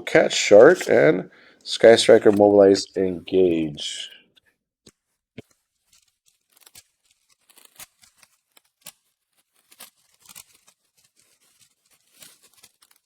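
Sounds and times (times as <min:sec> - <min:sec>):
small clicks and crackles: 0:04.3 - 0:13.0
foil wrappers crinkling and tearing: 0:05.4 - 0:13.0.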